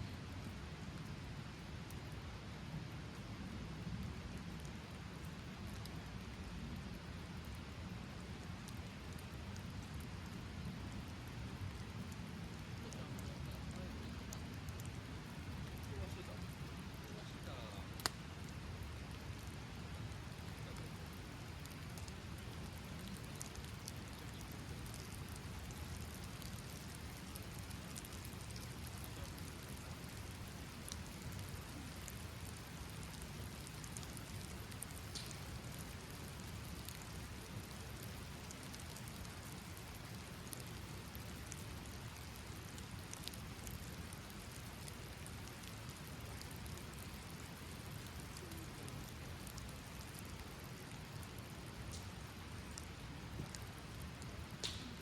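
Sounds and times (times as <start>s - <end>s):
steady rain falling: 0.0s - 55.0s
drops ticking: 18.0s - 18.2s.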